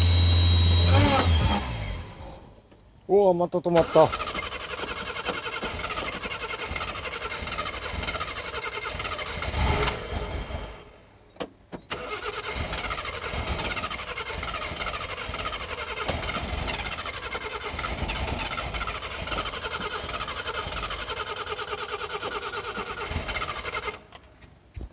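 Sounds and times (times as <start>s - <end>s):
engine cranking on starter: 3.7s - 11.0s, 11.9s - 24.3s.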